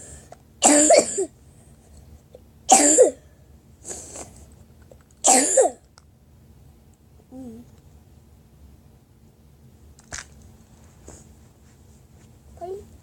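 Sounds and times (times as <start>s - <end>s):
person coughing: 0.6s - 1.3s, 2.7s - 3.2s, 5.3s - 5.8s.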